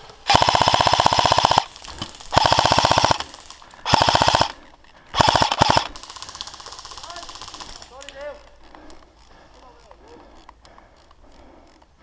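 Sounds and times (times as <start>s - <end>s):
faint rapid ticking fire: 0.0s - 12.0s
airsoft gun full-auto bursts: 0.2s - 8.1s.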